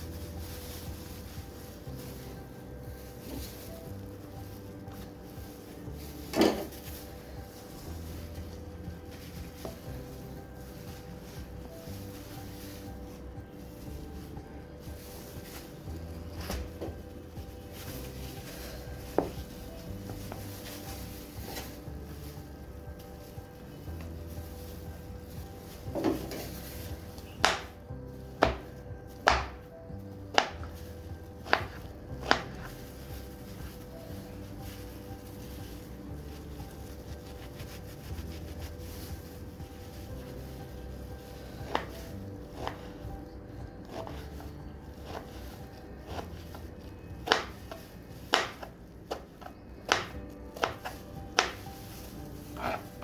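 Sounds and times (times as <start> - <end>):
knife chopping on cutting board: 29.3 - 29.6, 31.4 - 32.7, 47.2 - 49.3, 49.9 - 51.6.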